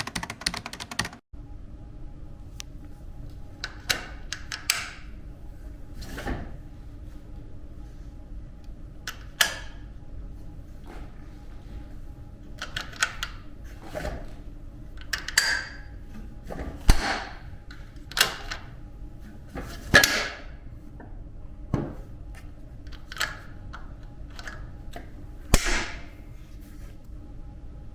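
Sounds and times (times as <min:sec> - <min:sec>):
bed lock mechanism clicks: 0:15.0 - 0:15.8, 0:16.8 - 0:18.7.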